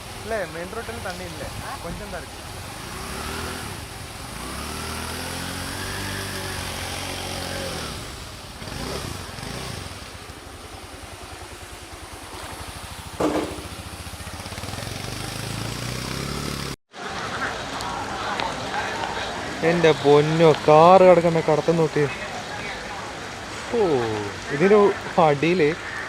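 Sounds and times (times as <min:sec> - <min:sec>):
vehicle engine idling: 0:08.0 - 0:16.2.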